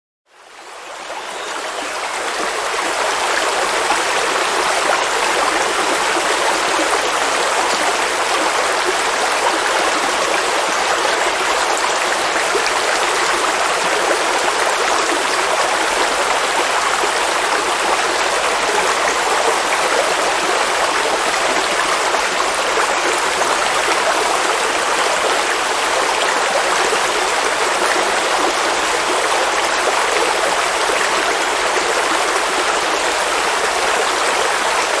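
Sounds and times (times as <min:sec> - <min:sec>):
river water flowing over rocks: 0:00.3 - 0:35.0.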